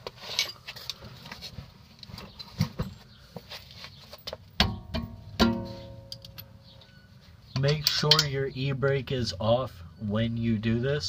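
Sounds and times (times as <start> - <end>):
metal tools clinking: 0.2 - 1.1, 5.4 - 8.5
sharp metallic clanks: 4.6 - 7.0, 7.6 - 8.4.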